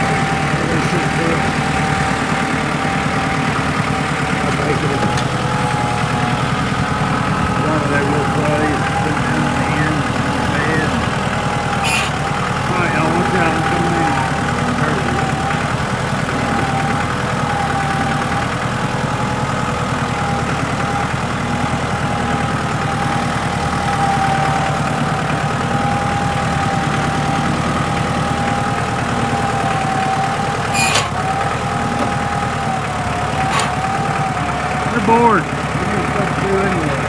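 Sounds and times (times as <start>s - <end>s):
diesel engine running: 0.0s - 37.0s.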